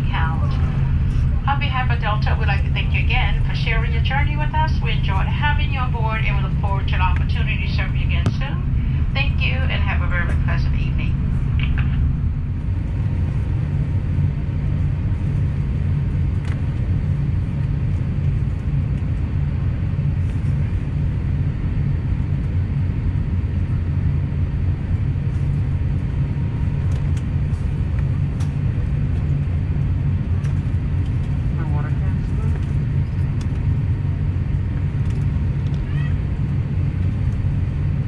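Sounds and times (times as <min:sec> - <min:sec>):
aircraft cabin rumble: 0:00.0 - 0:38.0
faint clicks: 0:34.8 - 0:35.9.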